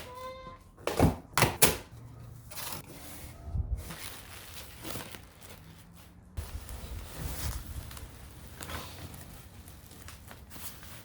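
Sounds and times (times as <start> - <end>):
packing rustling: 3.8 - 11.0.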